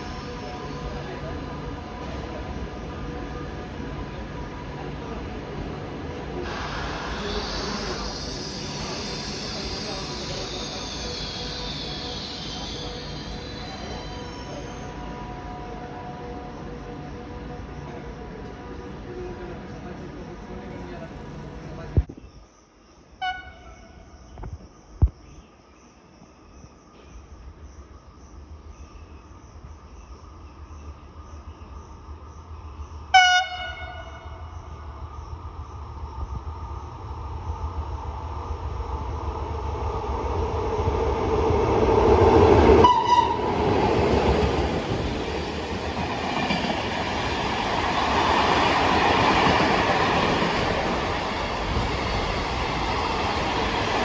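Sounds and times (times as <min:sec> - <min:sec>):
train wheels rumbling on rails: 0:00.0 - 0:22.2, 0:33.7 - 0:54.0
train horn blasts: 0:23.2 - 0:24.1, 0:33.1 - 0:34.4, 0:42.8 - 0:43.7.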